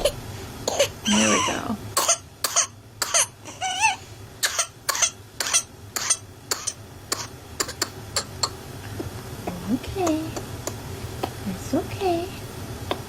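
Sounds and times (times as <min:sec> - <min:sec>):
child coughing rapidly: 0:00.0 - 0:03.6, 0:04.4 - 0:08.6.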